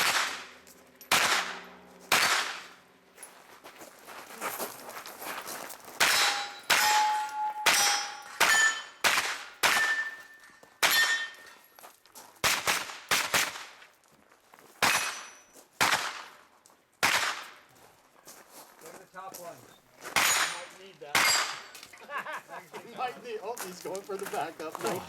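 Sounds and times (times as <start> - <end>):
carbine gunshots: 0.0 - 2.8, 6.0 - 10.2, 14.8 - 16.3, 17.0 - 17.5, 20.2 - 21.7
steel targets ringing: 0.0 - 3.0, 6.0 - 11.7, 14.9 - 15.5, 20.2 - 21.8.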